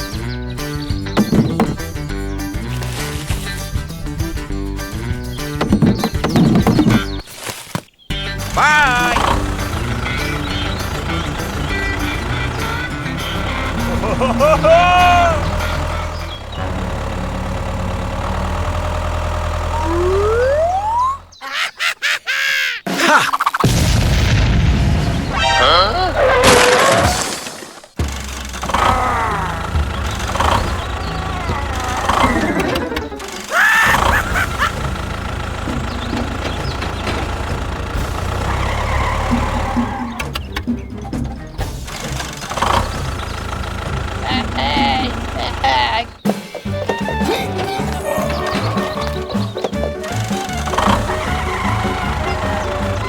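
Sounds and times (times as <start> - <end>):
small motor running: 8.4 - 21.4, 28.0 - 40.4, 41.6 - 46.2, 47.0 - 53.0.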